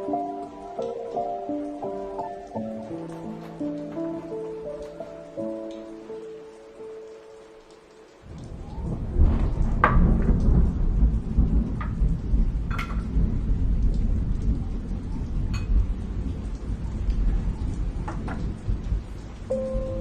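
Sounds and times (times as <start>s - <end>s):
rain falling: 0.0s - 20.0s
sharp drips: 0.0s - 20.0s
low rumble of thunder: 8.2s - 20.0s.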